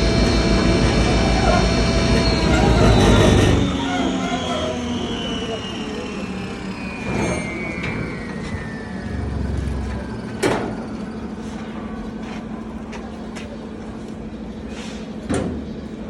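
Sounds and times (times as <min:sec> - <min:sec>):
grinding mill humming: 0:00.0 - 0:10.4.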